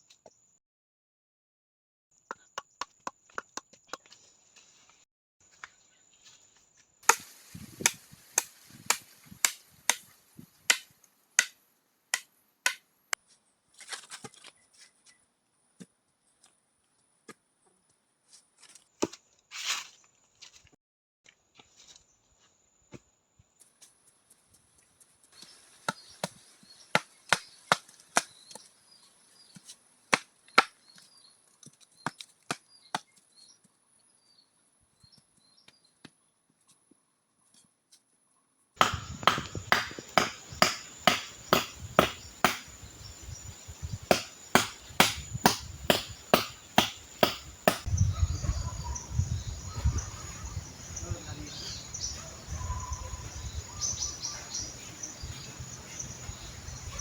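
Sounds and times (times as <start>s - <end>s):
wood chopping strikes: 7.0s - 12.8s, 25.9s - 28.3s, 38.8s - 47.9s.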